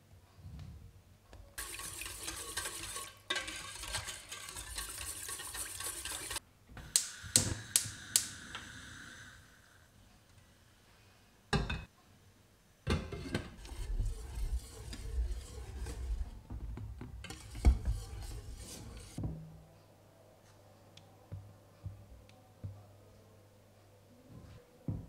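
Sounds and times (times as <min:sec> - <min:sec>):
dishes and cutlery clattering: 0:01.6 - 0:06.4, 0:12.9 - 0:13.7.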